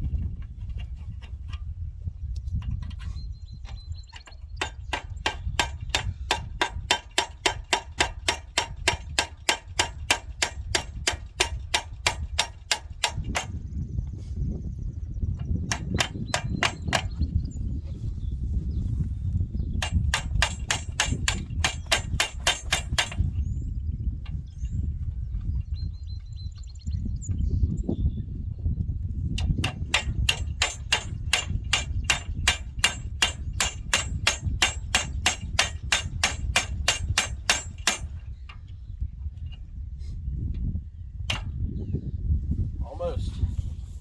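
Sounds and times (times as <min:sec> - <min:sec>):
hammer striking metal: 0:19.8 - 0:23.3, 0:29.6 - 0:38.2.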